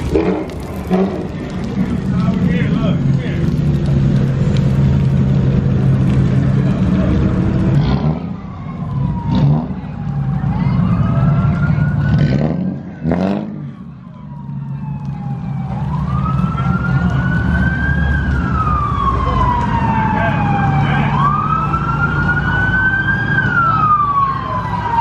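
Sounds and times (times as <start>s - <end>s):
car engines idling: 0.0s - 25.0s
police siren wailing: 6.0s - 25.0s.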